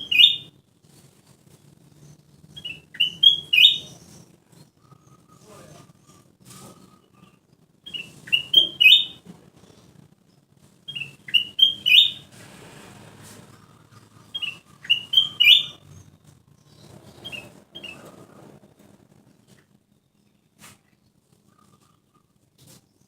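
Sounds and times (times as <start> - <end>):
bulbul singing: 0.0 - 0.5, 2.5 - 4.2, 4.8 - 9.2, 10.9 - 12.3, 14.0 - 16.2.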